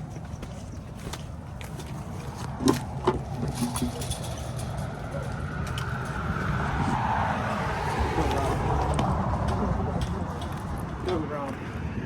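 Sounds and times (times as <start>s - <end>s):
footsteps scuffing: 0.0s - 3.5s
traffic rumble: 0.0s - 12.0s
vehicle approaching: 0.0s - 12.0s.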